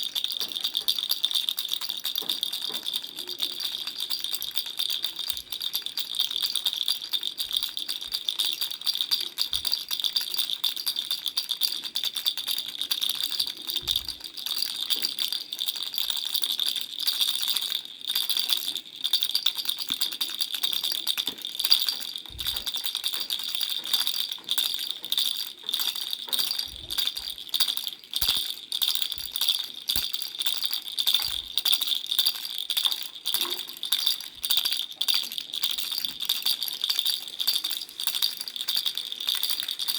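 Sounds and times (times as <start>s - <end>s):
baby rattle shaken: 0.0s - 39.9s.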